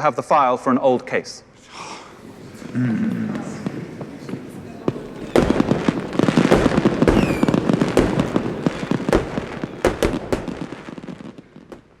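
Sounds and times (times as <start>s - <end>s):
fireworks crackling and banging: 1.9s - 12.0s
falling firework whistle: 3.3s - 11.4s.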